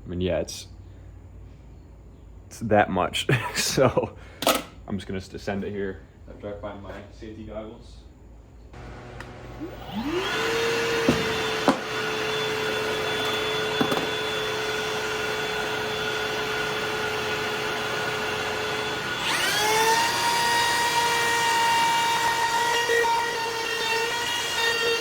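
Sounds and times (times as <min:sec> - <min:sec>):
router motor whine: 0:08.8 - 0:25.0
shop vacuum higher whine: 0:08.8 - 0:25.0.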